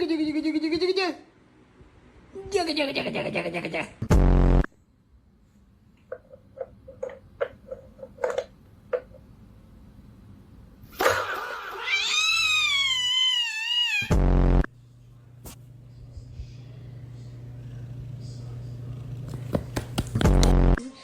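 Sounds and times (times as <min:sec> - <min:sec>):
harsh buzz: 0:04.1 - 0:04.7, 0:14.1 - 0:14.7
cat yowling: 0:11.1 - 0:14.1.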